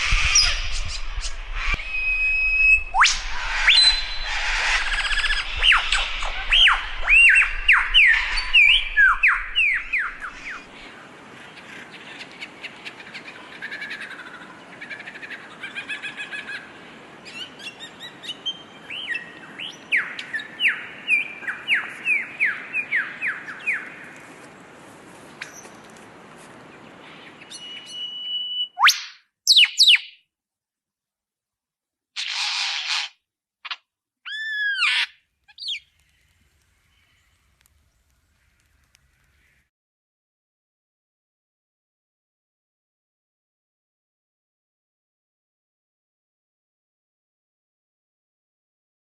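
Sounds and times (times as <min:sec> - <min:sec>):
songbird singing: 0:00.1 - 0:24.3, 0:25.3 - 0:26.0, 0:26.6 - 0:30.2, 0:34.3 - 0:39.7.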